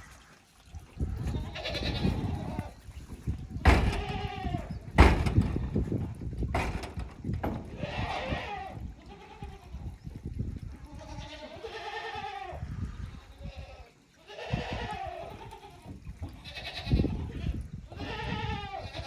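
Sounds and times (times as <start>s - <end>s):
goats bleating: 1.3s - 2.7s, 7.6s - 9.9s, 10.9s - 12.6s, 13.4s - 19.0s
low rumbling: 3.4s - 9.0s
sharp knocks on microphone: 3.6s - 4.3s, 5.0s - 7.7s.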